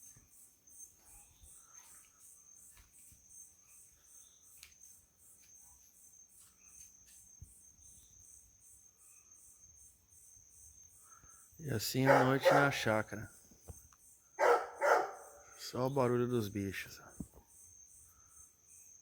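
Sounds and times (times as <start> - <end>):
crickets trilling: 0.0 - 19.0
night creature calls: 12.0 - 13.0.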